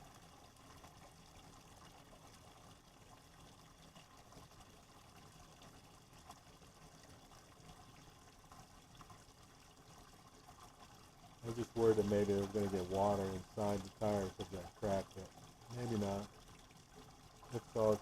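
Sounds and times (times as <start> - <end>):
small water splashes: 0.0 - 18.0
tap water trickling into sink: 3.9 - 18.0.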